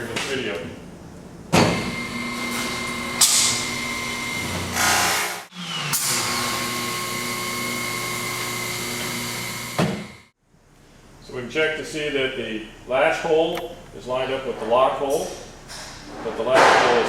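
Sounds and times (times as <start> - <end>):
machine motors whining: 1.7 - 10.3.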